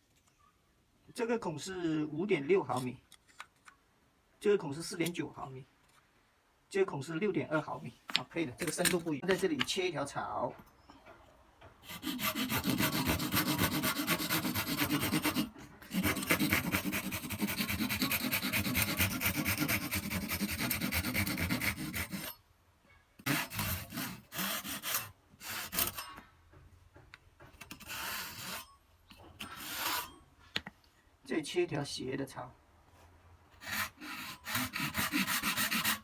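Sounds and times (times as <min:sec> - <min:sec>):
hand saw cutting bamboo: 0:11.8 - 0:22.4, 0:23.2 - 0:26.2, 0:27.6 - 0:28.7, 0:29.4 - 0:30.2, 0:33.6 - 0:36.0.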